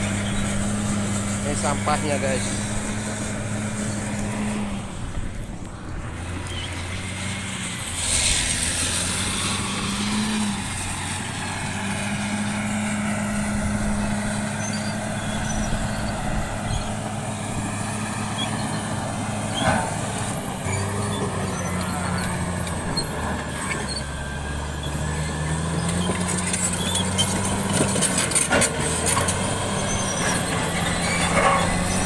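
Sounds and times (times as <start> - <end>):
bulldozer diesel engine running: 0.0 - 32.0
brief rushing hiss: 7.9 - 9.6.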